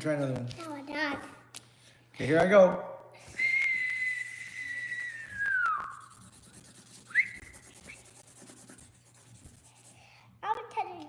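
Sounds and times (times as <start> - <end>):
pen squeaking on paper: 4.2 - 9.6.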